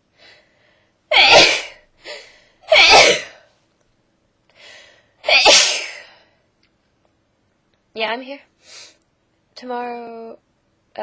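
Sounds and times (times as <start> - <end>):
person sneezing: 1.1 - 1.8, 2.7 - 3.4, 5.2 - 6.1
short breaths drawn in: 4.5 - 5.2.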